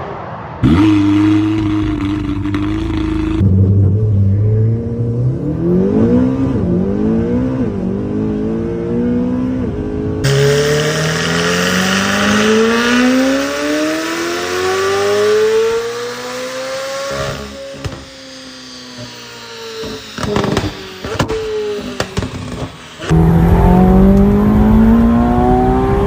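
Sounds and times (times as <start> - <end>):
car engine accelerating hard: 0.6 - 18.6, 23.0 - 26.0.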